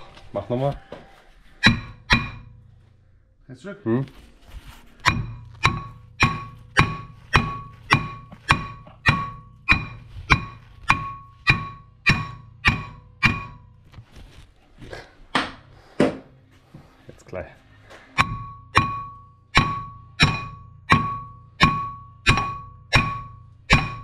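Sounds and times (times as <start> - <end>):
hammer striking steel disc: 1.5 - 2.9, 5.0 - 14.0, 18.1 - 24.0.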